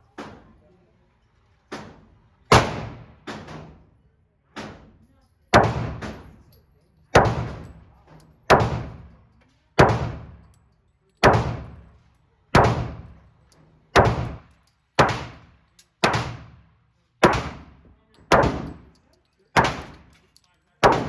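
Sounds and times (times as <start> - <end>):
pistol shots ringing out: 1.7 - 3.8, 5.6 - 6.4, 7.1 - 7.8, 8.5 - 9.2, 9.8 - 10.5, 11.2 - 12.0, 12.6 - 13.2, 14.0 - 16.6, 17.2 - 19.0, 19.6 - 20.2.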